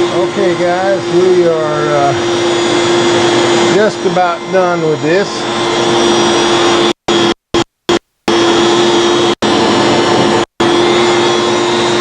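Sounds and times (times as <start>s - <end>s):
cnc router carving wood: 0.0s - 7.3s, 8.3s - 12.0s.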